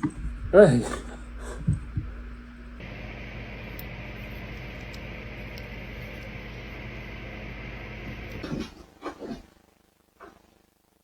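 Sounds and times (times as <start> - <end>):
soft low thumps: 0.0 - 2.8
low hum: 0.0 - 8.7
steady hiss: 0.0 - 11.0.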